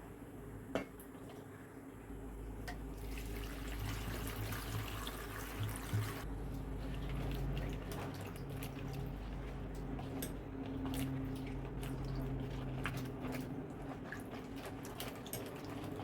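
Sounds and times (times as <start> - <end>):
water dripping: 2.7 - 6.6
water running from a tap: 3.0 - 6.3.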